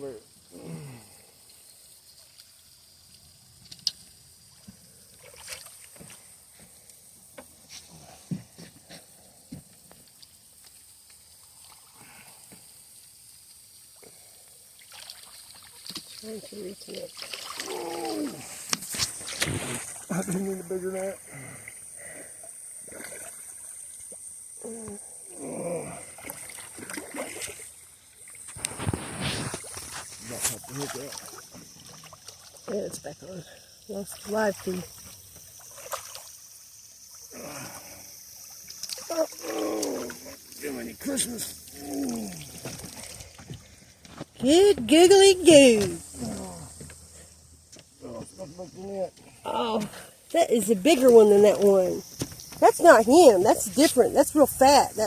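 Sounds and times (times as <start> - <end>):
pond water splashing: 2.1 - 9.2, 10.0 - 55.0
indistinct voices: 17.6 - 18.6, 39.1 - 42.8, 44.4 - 46.9.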